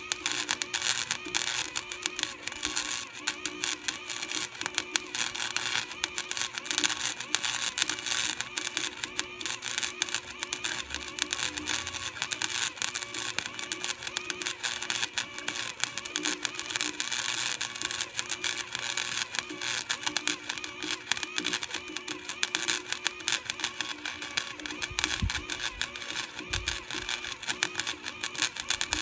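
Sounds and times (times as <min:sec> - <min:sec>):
arc welding crackle: 0:00.0 - 0:29.0.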